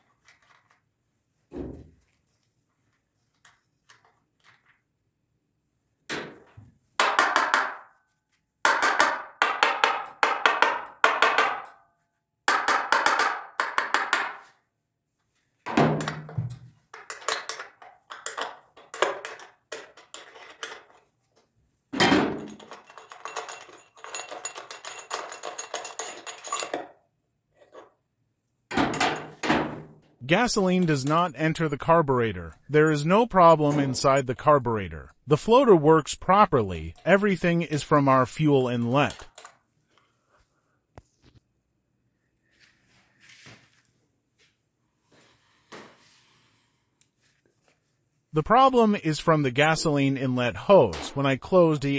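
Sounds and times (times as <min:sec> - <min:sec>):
tools clicking and rattling on metal: 0:16.0 - 0:21.1, 0:22.0 - 0:27.0, 0:28.7 - 0:29.5, 0:36.6 - 0:39.6.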